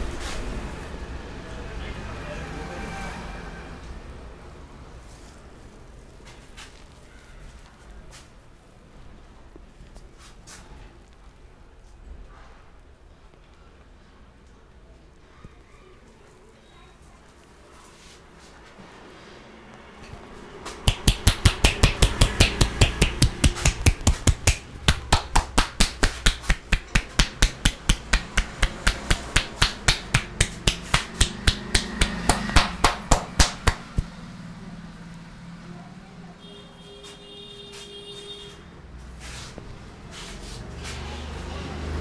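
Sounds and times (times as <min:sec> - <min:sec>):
hands slapping in massage tapping: 0:20.7 - 0:34.1.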